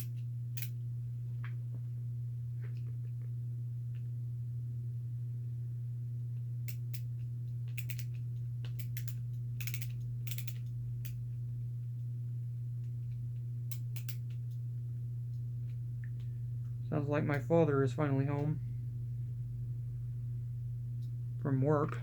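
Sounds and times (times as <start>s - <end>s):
steady low hum: 0.0s - 22.0s
ratcheting screwdriver clicking: 7.7s - 11.2s, 13.7s - 14.2s.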